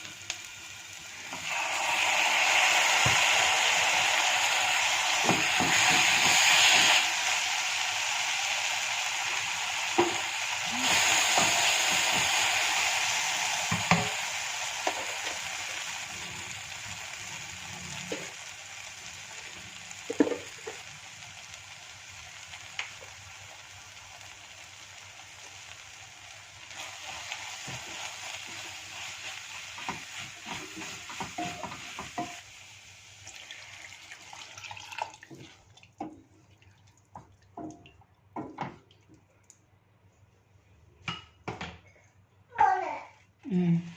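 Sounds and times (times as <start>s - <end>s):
food sizzling in hot oil: 0.0s - 36.3s
spoon stirring taps and scrapes: 29.8s - 32.4s, 35.2s - 36.4s, 37.1s - 39.3s.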